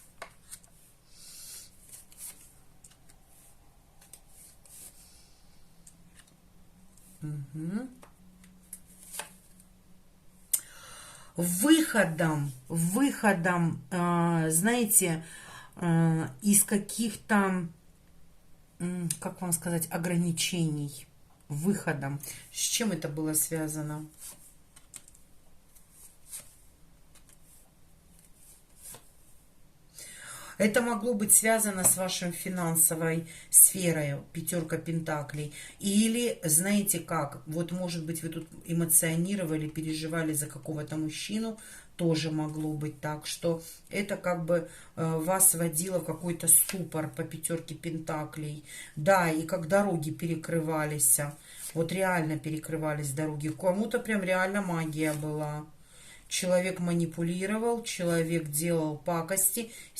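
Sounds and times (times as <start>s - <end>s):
cards sliding papery swishes: 0.1s - 5.3s, 8.7s - 9.6s, 24.1s - 25.0s, 25.7s - 29.4s.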